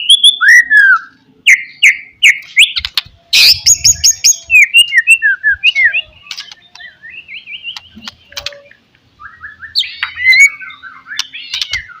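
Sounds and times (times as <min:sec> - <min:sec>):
songbird whistling with clicks: 0:04.6 - 0:07.0, 0:07.6 - 0:12.0.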